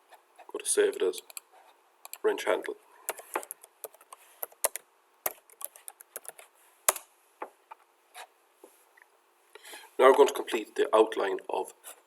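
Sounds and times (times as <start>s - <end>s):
computer keyboard typing: 2.0s - 2.2s, 3.1s - 7.0s.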